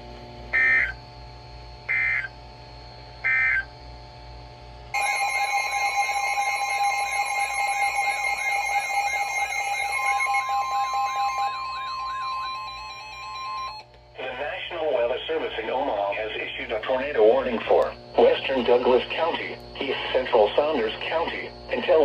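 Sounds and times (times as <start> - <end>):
buzzy digital bursts: 3.2 - 3.7
steady tone: 4.9 - 13.9.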